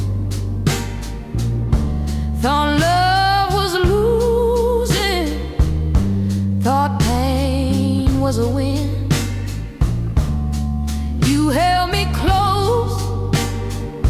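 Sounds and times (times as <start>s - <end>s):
bass line: 0.0s - 14.0s
drums: 0.0s - 14.0s
person singing: 11.2s - 14.0s.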